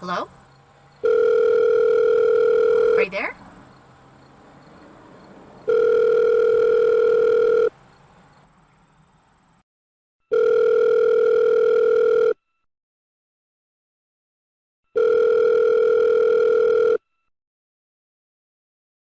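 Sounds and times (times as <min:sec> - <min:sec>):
telephone ringing tone: 0:01.0 - 0:03.3, 0:05.7 - 0:07.8, 0:10.3 - 0:12.6, 0:14.9 - 0:17.2.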